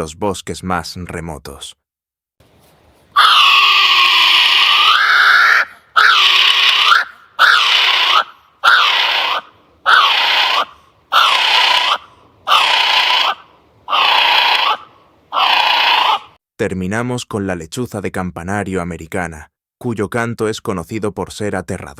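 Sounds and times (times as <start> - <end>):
kiwi shrill whistled calls: 3.2 - 16.3.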